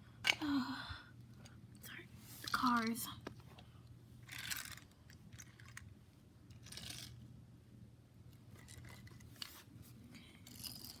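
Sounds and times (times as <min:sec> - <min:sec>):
low steady hum: 0:00.0 - 0:11.0
toy cars scraping: 0:06.6 - 0:07.2.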